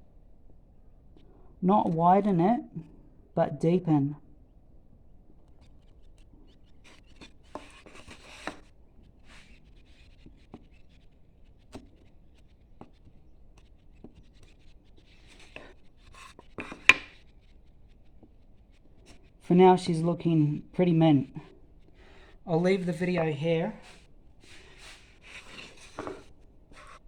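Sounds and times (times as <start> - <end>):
chisel scraping wood: 5.5 - 20.4, 21.4 - 27.0
sharp ticks of chisel on wood: 16.6 - 17.2.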